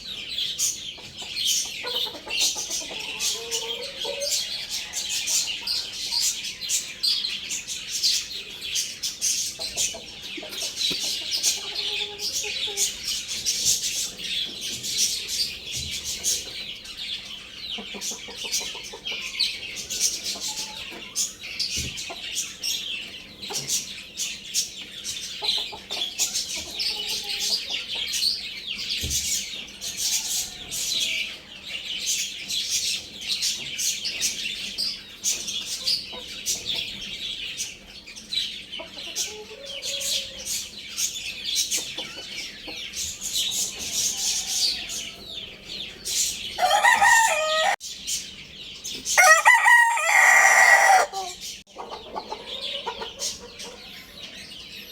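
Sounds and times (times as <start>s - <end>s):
small birds peeping and chirping: 0.0s - 54.9s
soft clucks: 1.0s - 4.4s, 9.5s - 13.0s, 51.1s - 53.9s
young rooster crowing: 46.6s - 47.8s, 49.2s - 51.4s.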